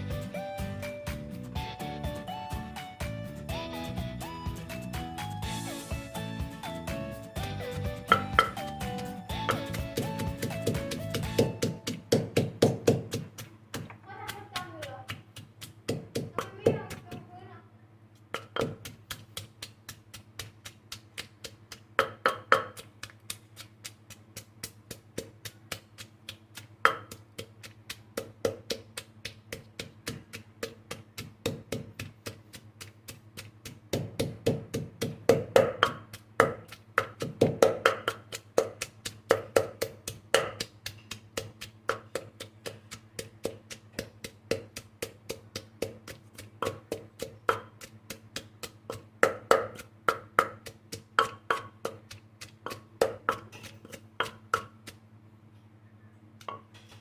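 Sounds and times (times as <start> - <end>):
low steady hum: 0.0 - 57.0.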